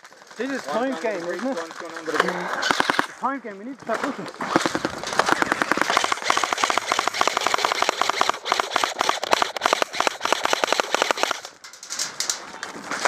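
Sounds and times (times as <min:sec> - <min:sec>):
airsoft gun firing full auto: 0:02.5 - 0:03.1, 0:04.4 - 0:11.5.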